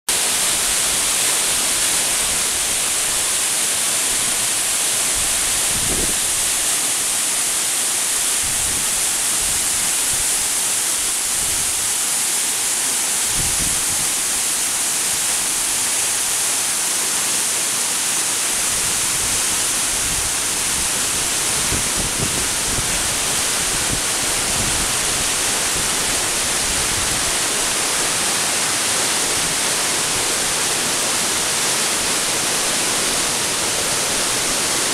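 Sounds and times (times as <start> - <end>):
waterfall rushing: 0.1 - 34.9
wind gusts on microphone: 5.1 - 6.6, 8.4 - 10.4, 13.3 - 14.3, 18.7 - 28.0.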